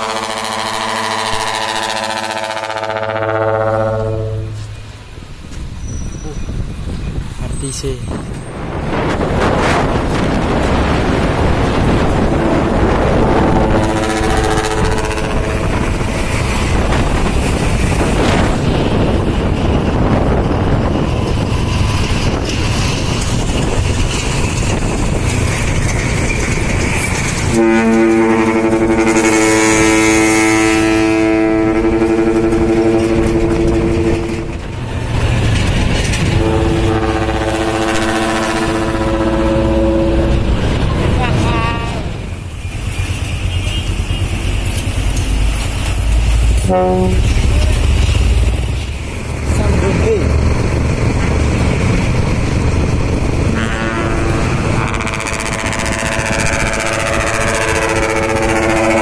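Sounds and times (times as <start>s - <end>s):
truck air horn blasts: 0.0s - 4.7s, 13.5s - 15.9s, 27.5s - 34.5s, 36.3s - 40.5s, 46.6s - 47.8s, 53.5s - 59.0s
truck engine rumble: 0.0s - 59.0s.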